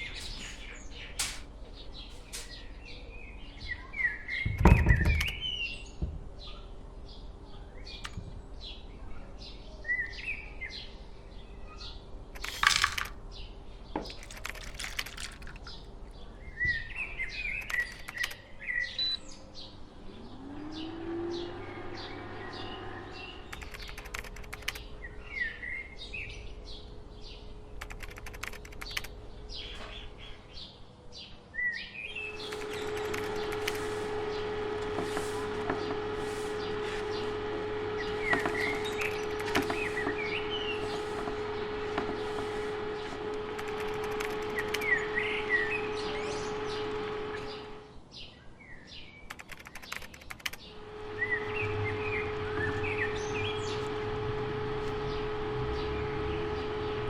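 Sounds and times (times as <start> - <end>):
sharp clicks and knocks: 0.0 - 2.6, 14.0 - 15.8, 27.8 - 30.2, 32.4 - 47.8
pitched machine hum: 0.0 - 2.8, 19.6 - 30.7, 32.1 - 48.0, 50.3 - 57.0
small birds chirping: 0.0 - 57.0.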